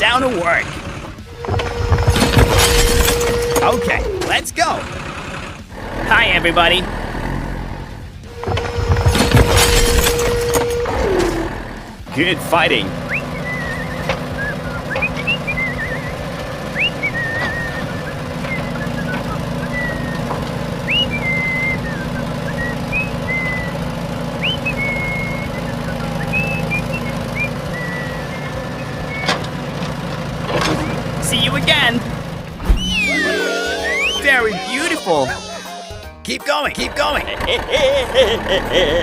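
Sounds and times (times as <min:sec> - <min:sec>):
low vehicle engine drone: 0:00.0 - 0:36.2, 0:36.8 - 0:39.0
high whistle-like chirps: 0:13.1 - 0:16.2, 0:16.8 - 0:20.3, 0:20.9 - 0:23.8, 0:24.4 - 0:29.3, 0:32.7 - 0:34.4.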